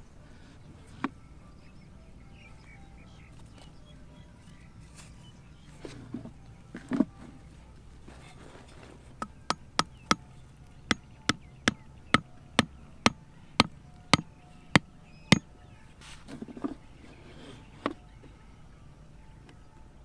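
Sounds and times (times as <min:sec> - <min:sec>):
soft rustle: 0:03.2 - 0:09.2, 0:15.9 - 0:18.4
tool knocking on hard material: 0:09.2 - 0:10.2.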